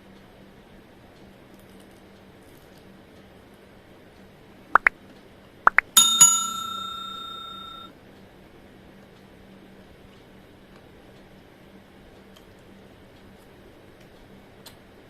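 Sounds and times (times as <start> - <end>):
bright metallic bell ringing: 5.9 - 7.9.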